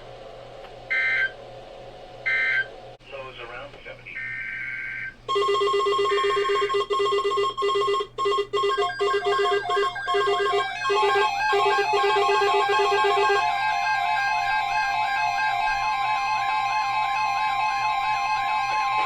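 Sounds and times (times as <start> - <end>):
electronic beeping tune: 5.3 - 16.6.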